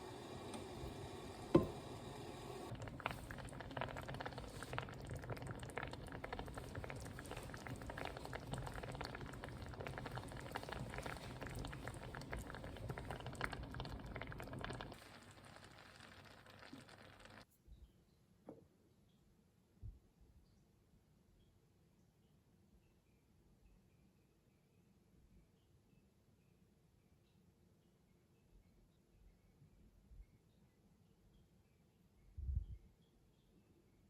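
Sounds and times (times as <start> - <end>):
food bubbling in a pan: 0.0 - 17.5.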